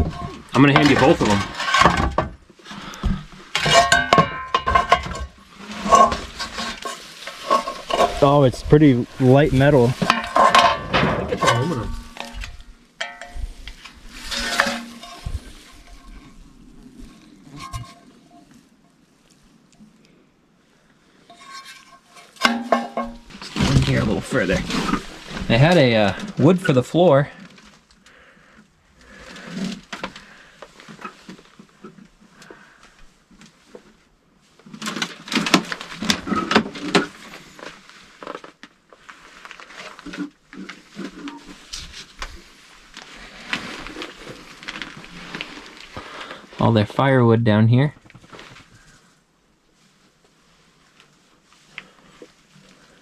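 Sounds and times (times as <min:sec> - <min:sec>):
aluminum pans clinking: 0:00.0 - 0:16.4, 0:17.5 - 0:18.5, 0:21.3 - 0:26.6
wood cracking and clattering: 0:00.0 - 0:18.6, 0:21.4 - 0:28.3, 0:34.6 - 0:46.5
rustling scrape: 0:00.0 - 0:19.6, 0:21.2 - 0:27.9, 0:29.0 - 0:46.6.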